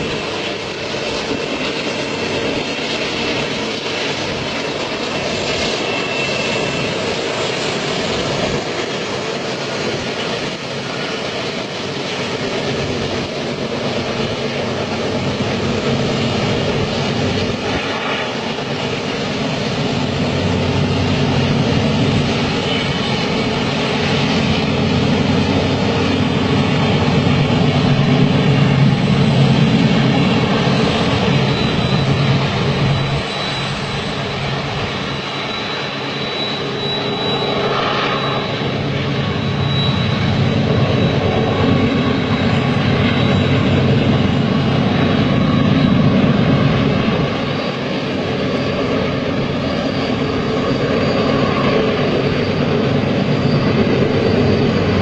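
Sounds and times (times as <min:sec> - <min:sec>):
train rumbling: 0:00.0 - 0:55.0
faint high whine: 0:15.6 - 0:55.0.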